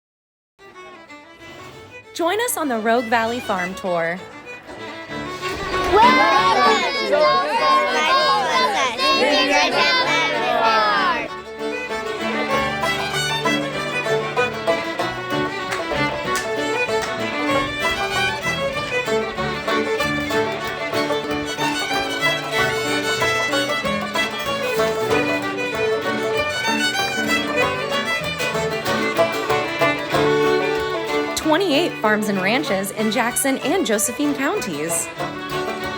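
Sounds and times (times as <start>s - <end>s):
folk fiddle tune: 0.6s - 35.9s
sustained low tones: 4.8s - 8.3s.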